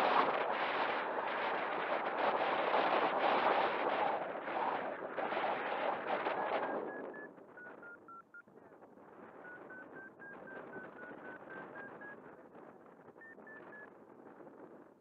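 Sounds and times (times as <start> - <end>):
wind on microphone: 0.0 - 15.0
short electronic beeps: 6.4 - 8.4, 9.4 - 12.2, 13.2 - 13.9.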